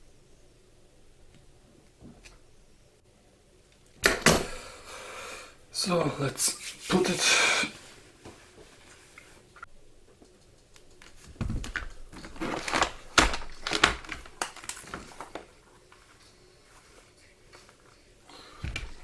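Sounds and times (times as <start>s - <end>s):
cable handling clicks and rustles: 10.2s - 16.3s.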